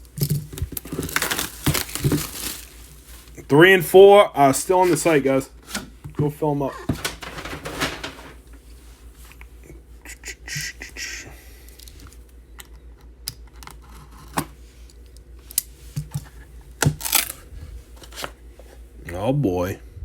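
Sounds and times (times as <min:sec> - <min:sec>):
hands handling packaging: 0:00.0 - 0:03.5, 0:04.5 - 0:09.5, 0:14.2 - 0:18.8
low steady hum: 0:00.0 - 0:20.0.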